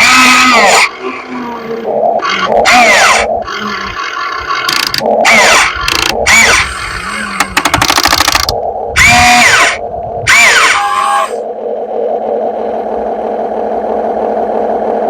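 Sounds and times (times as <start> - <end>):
model excavator motors whirring: 0.0 - 11.4
electric hum: 0.0 - 15.0.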